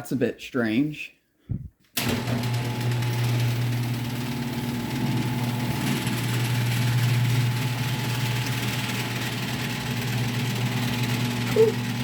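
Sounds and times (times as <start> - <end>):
garage door opener motor humming: 2.0 - 12.0.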